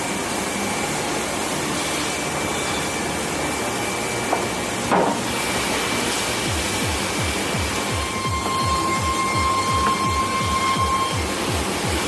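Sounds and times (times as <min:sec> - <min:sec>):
sawmill machinery running: 0:00.0 - 0:12.0.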